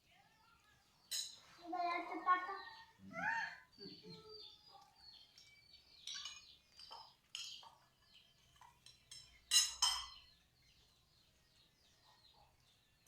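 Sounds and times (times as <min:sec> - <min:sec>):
spoons clinking against plates: 0:01.0 - 0:01.5, 0:05.3 - 0:07.9, 0:08.5 - 0:10.4.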